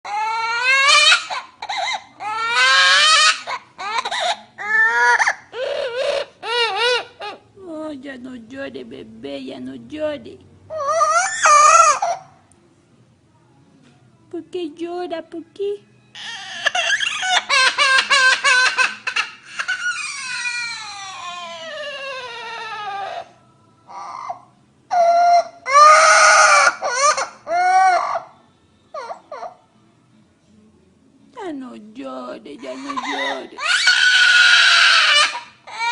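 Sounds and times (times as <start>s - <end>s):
parrot imitating baby crying: 0.0s - 7.5s, 10.7s - 12.4s, 16.2s - 29.6s, 32.6s - 35.9s.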